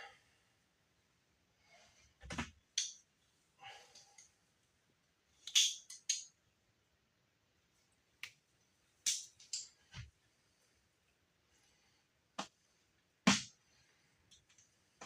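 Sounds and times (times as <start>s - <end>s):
rustles and clicks of handling wires: 7.7s - 10.3s, 12.3s - 15.0s.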